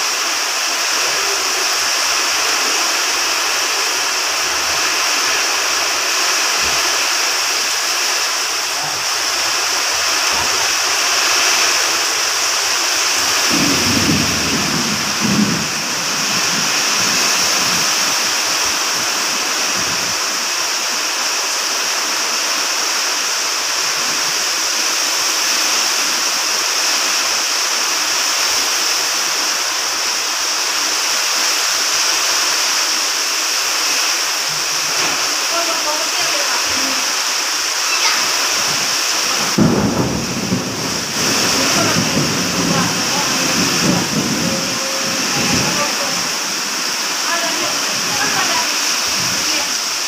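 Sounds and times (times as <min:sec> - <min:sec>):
heavy rain pouring: 0:00.0 - 0:50.0
low thunder rumble: 0:13.2 - 0:18.1, 0:38.7 - 0:48.4.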